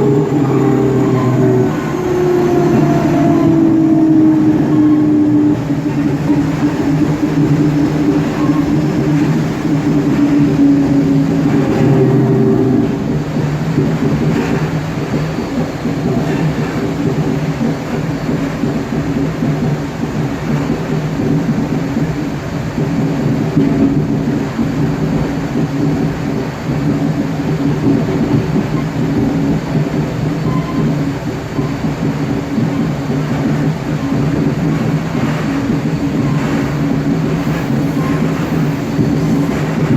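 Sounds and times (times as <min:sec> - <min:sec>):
train traction motor hum: 0:00.0 - 0:22.6, 0:29.2 - 0:39.9
wheels rumbling on track: 0:00.0 - 0:39.9.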